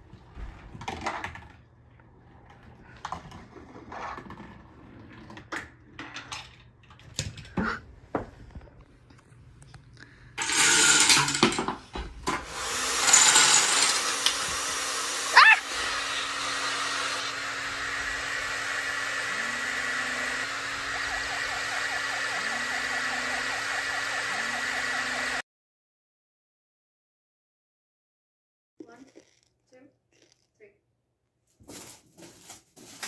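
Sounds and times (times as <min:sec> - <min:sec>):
objects clattering and knocking: 0:00.2 - 0:08.7, 0:10.4 - 0:12.5
hair dryer running: 0:10.4 - 0:11.4, 0:12.3 - 0:25.4.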